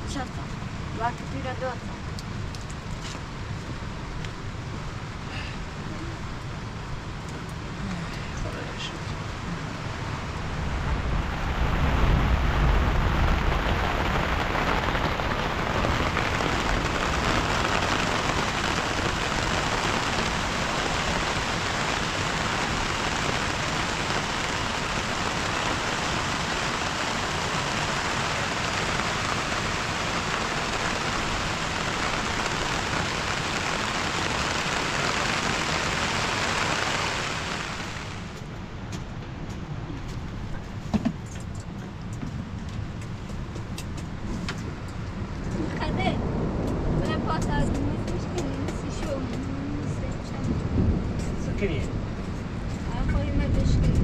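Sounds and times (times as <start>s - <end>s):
heavy rain hissing: 3.2s - 38.7s
low rumble: 3.9s - 40.7s, 44.2s - 54.0s.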